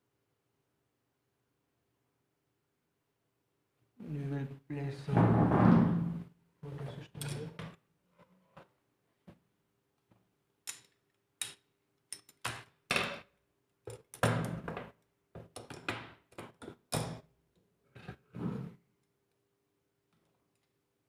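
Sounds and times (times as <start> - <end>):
laptop parts clicking and knocking: 13.9 - 17.2.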